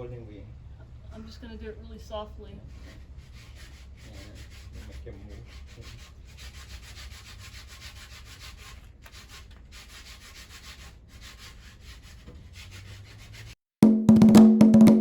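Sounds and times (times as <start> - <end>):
sandpaper rubbing on wood: 2.6 - 13.6.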